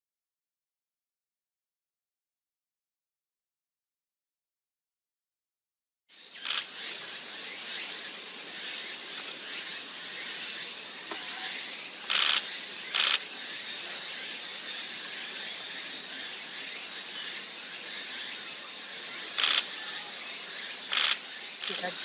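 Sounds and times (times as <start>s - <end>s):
steady hiss: 6.2s - 22.0s.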